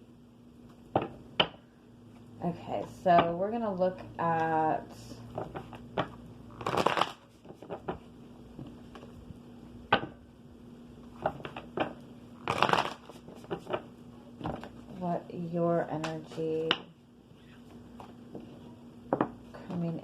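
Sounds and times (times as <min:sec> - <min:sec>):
cards riffle shuffling: 0:06.5 - 0:07.9, 0:12.4 - 0:13.8.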